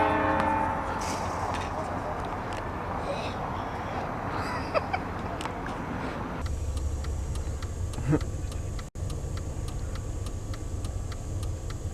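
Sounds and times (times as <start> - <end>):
car rumble: 0.0 - 11.9
light ticking: 6.4 - 11.9.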